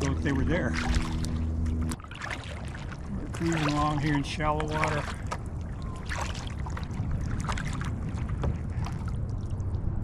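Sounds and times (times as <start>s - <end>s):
paddle water splashing: 0.0s - 9.8s
wind on microphone: 4.9s - 10.0s.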